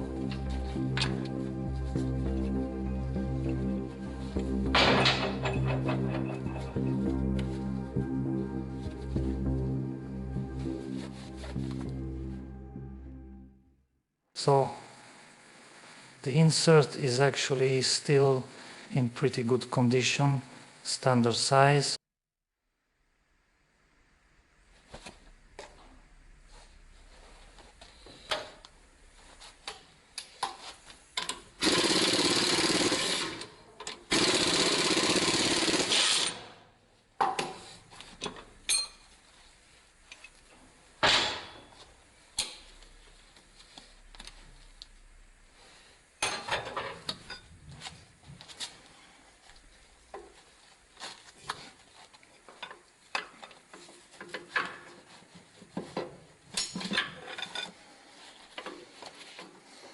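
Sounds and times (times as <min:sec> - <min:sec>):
power tool running: 0:31.6 - 0:33.5, 0:34.1 - 0:36.5.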